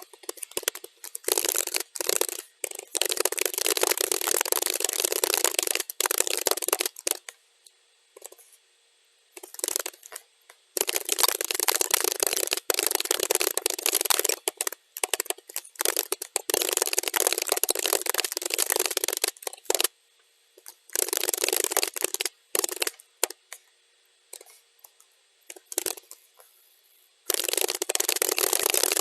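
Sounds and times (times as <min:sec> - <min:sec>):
keyboard typing: 0:00.0 - 0:07.3, 0:09.4 - 0:10.2, 0:10.8 - 0:19.9, 0:20.6 - 0:23.4, 0:27.3 - 0:29.0.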